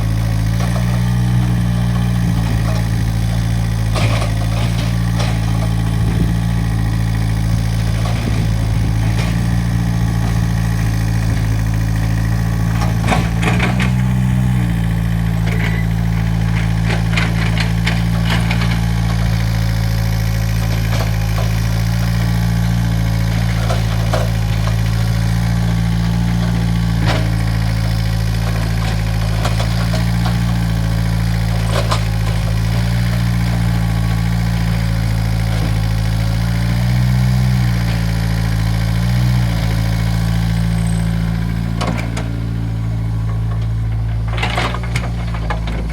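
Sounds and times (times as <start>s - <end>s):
excavator diesel engine running: 0.0s - 45.9s
bucket and arm clanking: 40.8s - 45.9s.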